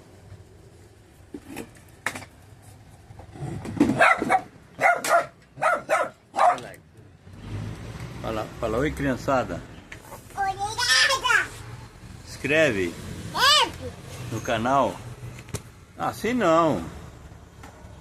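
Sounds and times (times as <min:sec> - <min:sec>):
dog barking: 0:04.0 - 0:06.7.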